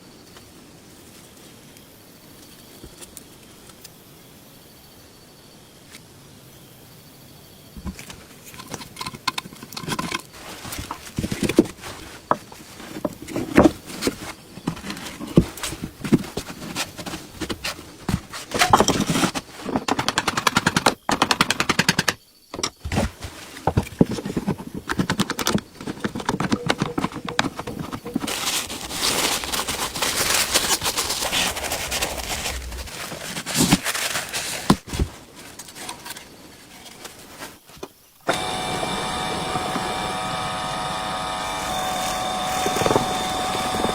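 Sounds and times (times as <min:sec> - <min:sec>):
fast rattling clicks: 0:19.9 - 0:22.2.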